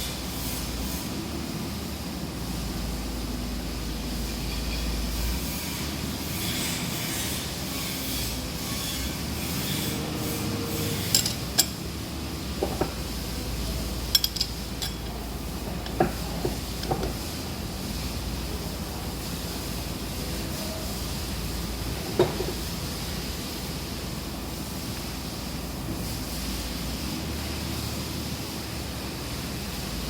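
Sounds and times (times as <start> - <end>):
metal clinks and taps: 11.1 - 11.8, 14.1 - 15.2.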